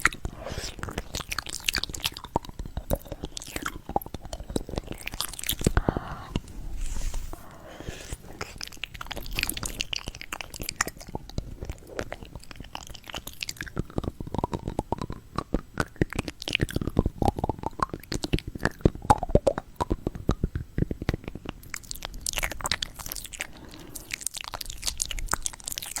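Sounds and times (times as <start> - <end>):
crunchy fruit chewing: 0.0 - 12.2
wet mouth sounds: 0.0 - 26.0.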